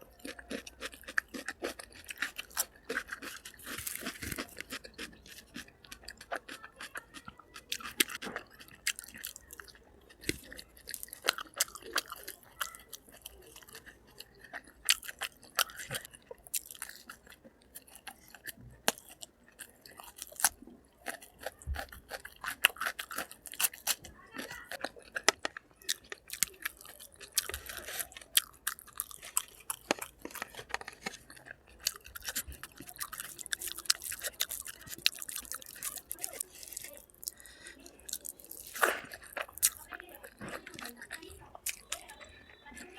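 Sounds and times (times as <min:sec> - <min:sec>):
crunchy bites: 0:00.0 - 0:42.9
person chewing food: 0:00.0 - 0:42.9
wet mouth clicks: 0:37.0 - 0:39.8.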